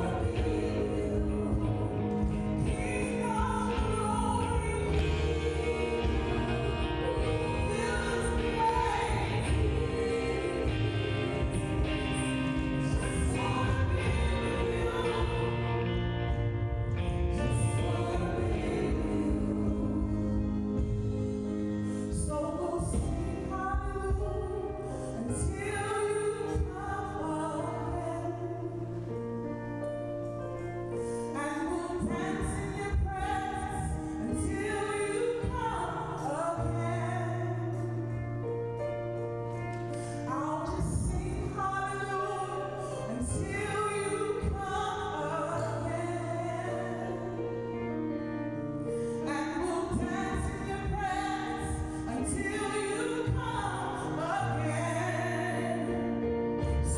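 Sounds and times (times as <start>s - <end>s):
person singing: 0.0s - 29.2s
praise band playing: 0.0s - 56.9s.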